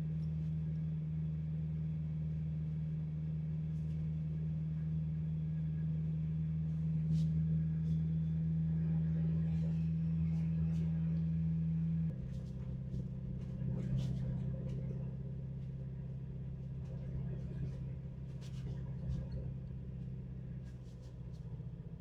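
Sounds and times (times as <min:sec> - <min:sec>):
car engine droning: 0:04.8 - 0:22.0.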